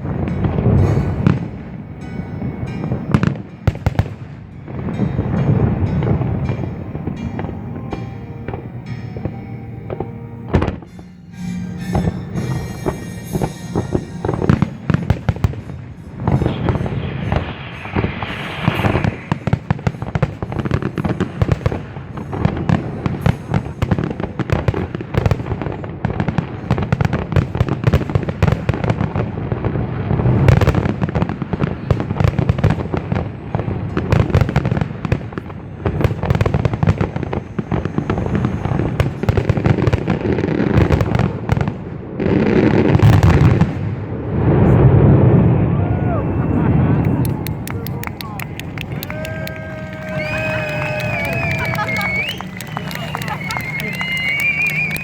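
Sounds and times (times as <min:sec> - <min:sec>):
fireworks bangs and crackles: 0:00.0 - 0:55.0
firework hissing burst: 0:11.0 - 0:23.8.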